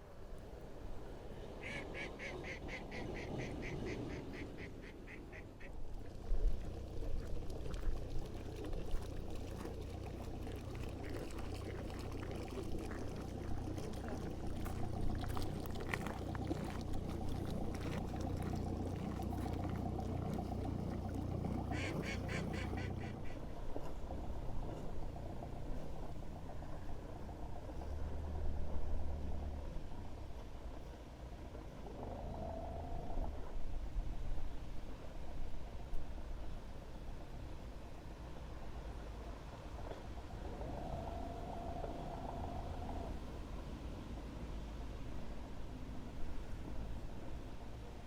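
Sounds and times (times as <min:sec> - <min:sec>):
boat engine hum: 0:00.0 - 0:48.0
duck quacking: 0:01.6 - 0:05.7, 0:21.7 - 0:23.4.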